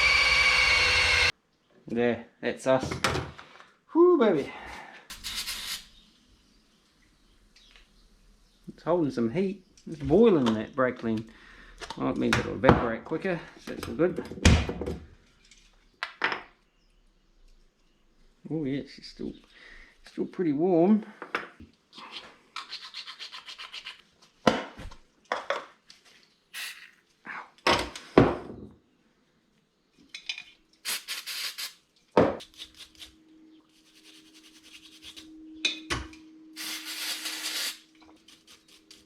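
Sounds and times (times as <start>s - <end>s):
rubbing and scraping: 32.4s - 35.4s.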